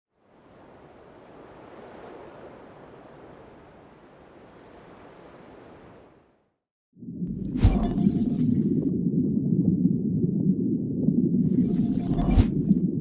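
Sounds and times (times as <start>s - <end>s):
muffled underwater rushing water: 0.1s - 6.3s, 7.0s - 13.0s.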